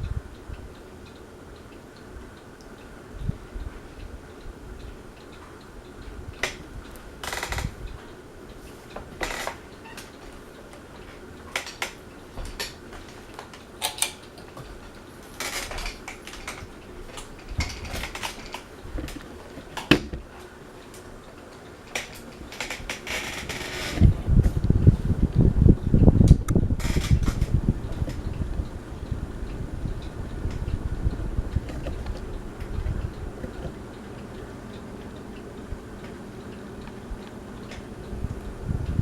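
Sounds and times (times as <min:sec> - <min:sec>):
ceiling fan humming: 0:00.0 - 0:39.0
irregular clicks and knocks: 0:08.9 - 0:21.1, 0:30.0 - 0:33.9.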